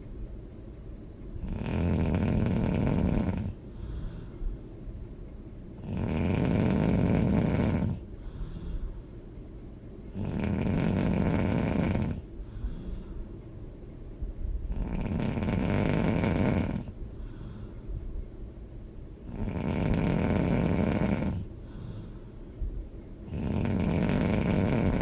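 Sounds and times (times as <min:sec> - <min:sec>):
quiet breathing: 0:01.3 - 0:25.0
person snoring loudly: 0:01.4 - 0:03.6, 0:05.8 - 0:08.0, 0:10.2 - 0:12.2, 0:14.7 - 0:16.9, 0:19.3 - 0:21.5, 0:23.3 - 0:25.0.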